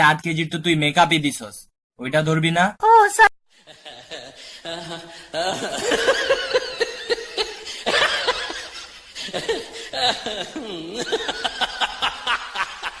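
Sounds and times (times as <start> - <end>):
person laughing: 9.3 - 13.0.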